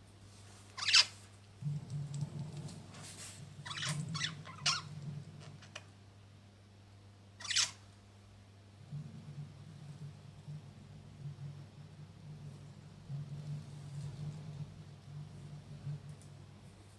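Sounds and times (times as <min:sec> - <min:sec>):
budgerigars chirping: 0:07.4 - 0:07.8.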